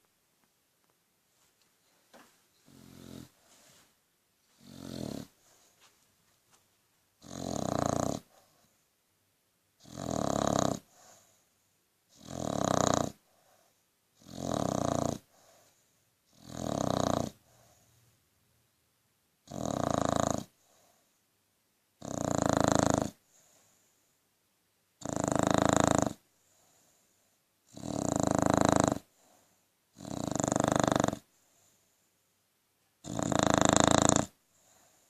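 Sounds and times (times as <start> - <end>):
quiet breathing: 1.3 - 9.0, 10.6 - 11.9, 12.6 - 18.3, 20.5 - 21.4, 23.1 - 24.4, 26.2 - 27.7, 28.6 - 32.4, 34.3 - 35.0
dog snoring: 2.6 - 3.7, 4.5 - 5.8, 7.2 - 8.7, 9.8 - 11.4, 12.1 - 18.0, 19.4 - 21.0, 22.0 - 23.8, 25.0 - 27.0, 27.6 - 31.7, 33.0 - 35.0.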